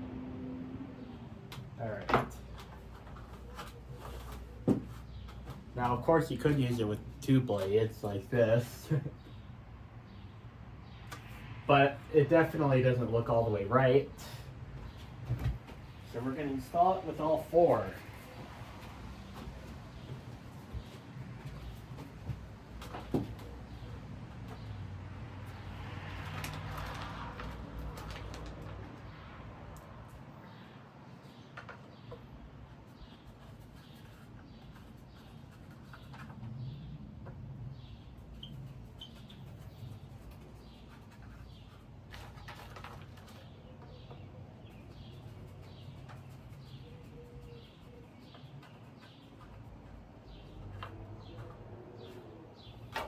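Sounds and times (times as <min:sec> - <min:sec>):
rustling handling noise: 0:02.0 - 0:08.6
bird chirping: 0:30.4 - 0:53.0.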